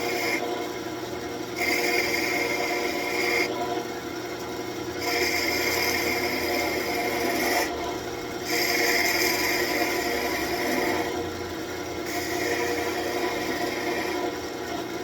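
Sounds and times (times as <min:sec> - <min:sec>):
gouge cutting wood: 0:00.0 - 0:00.4, 0:01.6 - 0:03.5, 0:05.0 - 0:11.3, 0:12.0 - 0:14.4
lathe motor humming: 0:00.0 - 0:15.0.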